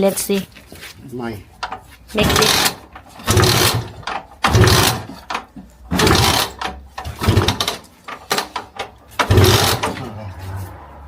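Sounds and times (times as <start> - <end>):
scooter engine being kick-started: 1.6 - 10.2.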